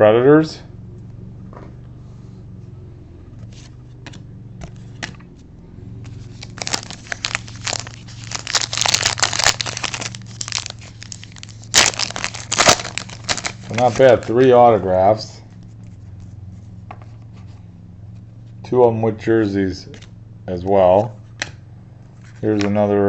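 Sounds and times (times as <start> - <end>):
wrapper crinkling and tearing: 6.1 - 14.3.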